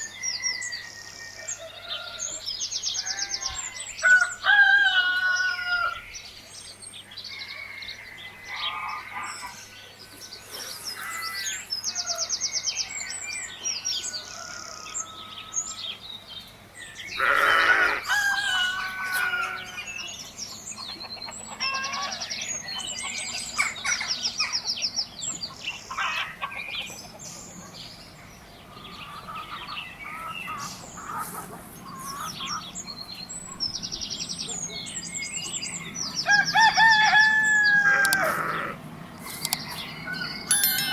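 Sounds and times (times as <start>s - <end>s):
rooster crowing: 3.0s - 6.0s, 13.9s - 16.0s, 17.2s - 20.0s, 36.2s - 38.8s
small birds chirping: 5.5s - 40.9s
hens clucking: 25.3s - 28.0s, 28.7s - 32.8s, 37.8s - 39.8s.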